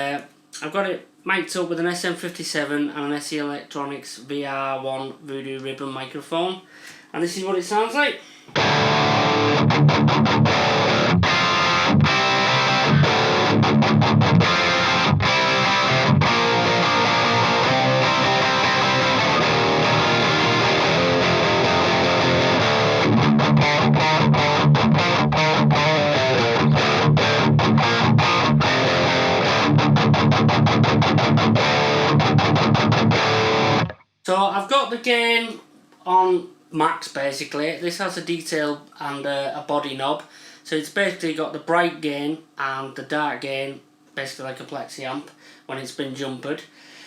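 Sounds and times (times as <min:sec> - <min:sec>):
distorted electric guitar riffing: 0:08.6 - 0:34.0.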